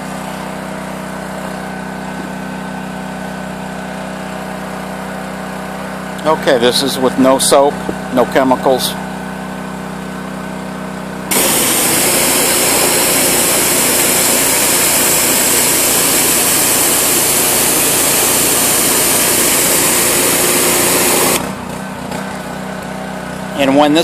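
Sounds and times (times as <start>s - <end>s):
pressure washer engine running: 0.0s - 24.0s
water jet hissing on siding: 11.3s - 21.7s.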